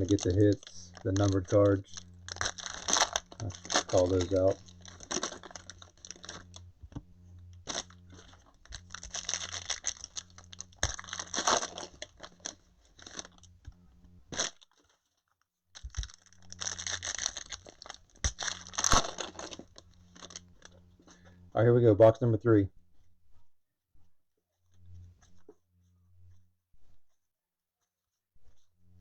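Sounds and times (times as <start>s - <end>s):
wrappers crinkling and tearing: 0.0s - 6.7s, 7.4s - 13.6s, 14.3s - 15.2s, 15.8s - 21.2s
low electrical hum: 0.0s - 27.1s.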